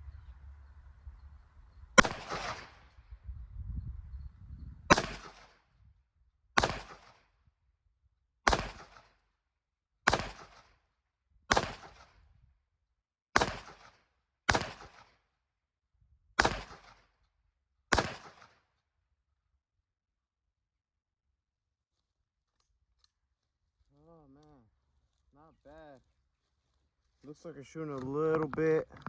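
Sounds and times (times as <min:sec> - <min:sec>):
gunshots with echo: 0:02.0 - 0:03.0, 0:04.9 - 0:05.6, 0:06.6 - 0:07.2, 0:08.5 - 0:09.0, 0:10.1 - 0:10.6, 0:11.5 - 0:12.1, 0:13.4 - 0:13.9, 0:14.5 - 0:15.0, 0:16.4 - 0:17.0, 0:17.9 - 0:18.5.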